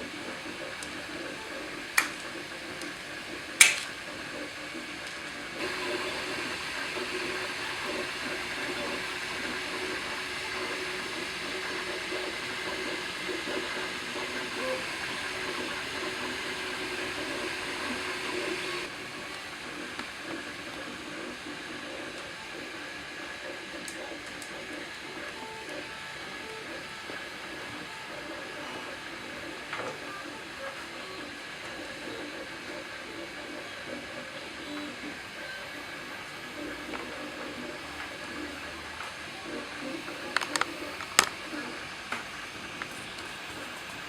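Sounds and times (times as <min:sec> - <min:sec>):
sharp click: 0:03.6 - 0:04.0.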